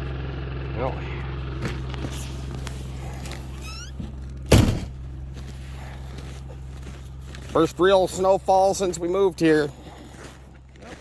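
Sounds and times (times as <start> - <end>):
engine humming: 0.0 - 10.8
high chirping squeak: 3.6 - 4.0
heavy thunk: 4.5 - 5.1.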